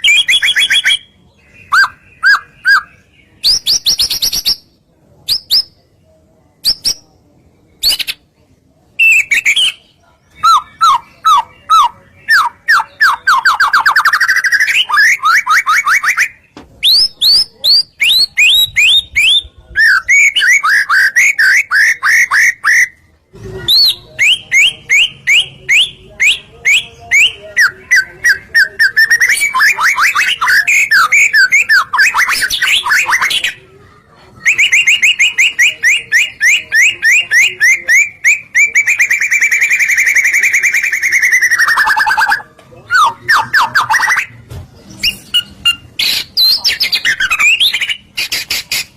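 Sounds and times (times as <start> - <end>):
bird singing whistled trills: 34.4 - 44.3.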